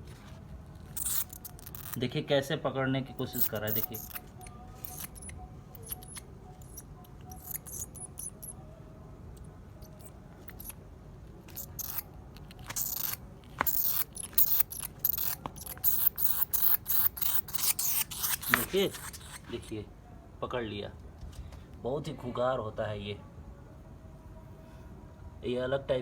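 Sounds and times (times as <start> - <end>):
bat squeaking and clicking: 0.8 - 2.0, 3.2 - 8.6, 9.8 - 10.8, 11.5 - 19.6.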